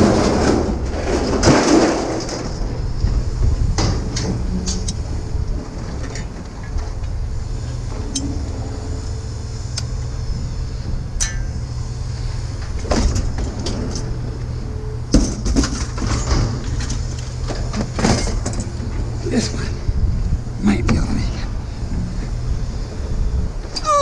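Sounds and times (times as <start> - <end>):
scrap metal clanking: 0.0 - 2.8, 15.1 - 19.8
vehicle engine idling: 2.1 - 24.0.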